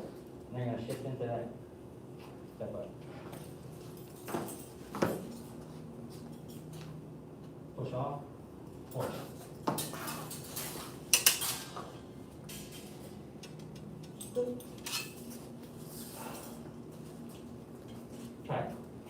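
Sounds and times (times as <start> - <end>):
metal knives clinking: 9.8 - 11.8, 13.5 - 15.4.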